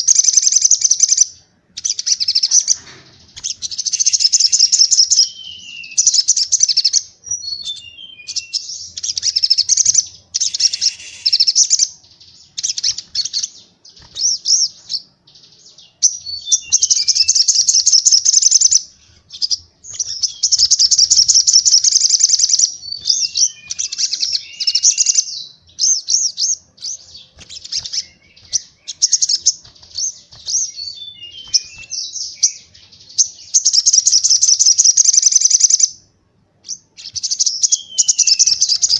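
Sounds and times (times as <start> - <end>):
songbird trills: 0.0 - 38.9
falling bird notes: 26.8 - 32.8.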